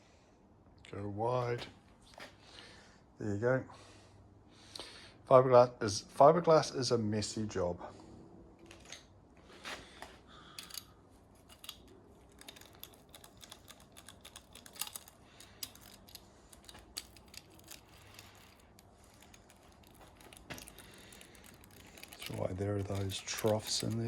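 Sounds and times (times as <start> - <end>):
tools clicking and tapping: 10.6 - 24.0.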